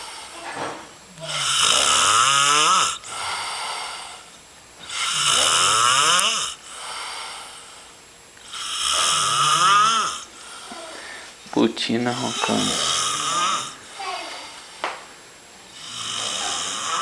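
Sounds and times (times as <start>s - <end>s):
loud rasping snoring: 1.2s - 7.6s, 8.4s - 10.8s, 12.2s - 13.8s, 15.7s - 17.0s.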